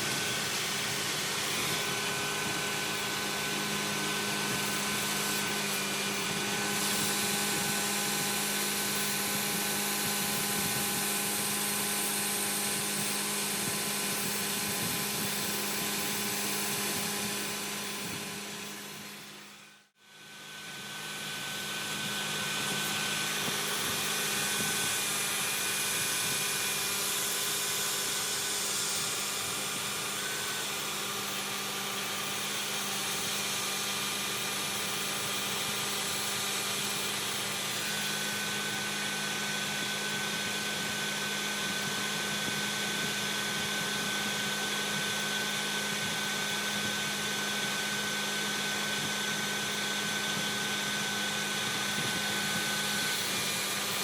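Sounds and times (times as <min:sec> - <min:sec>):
high whining tone: 0:00.0 - 0:40.9
milling machine running: 0:00.0 - 0:54.0.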